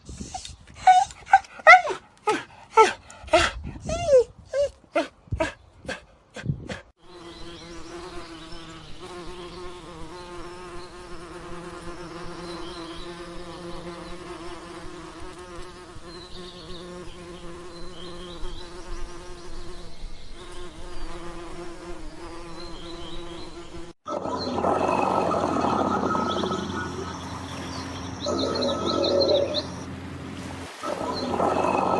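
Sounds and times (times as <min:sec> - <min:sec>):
flying insects buzzing: 0:07.0 - 0:31.9.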